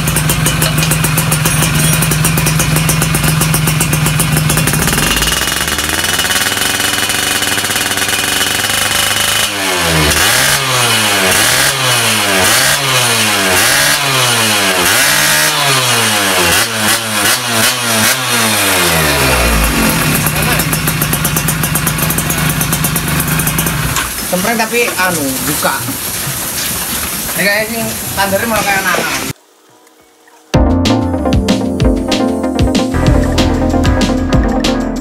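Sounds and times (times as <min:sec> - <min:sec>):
two-stroke engine revving: 0:00.0 - 0:24.4.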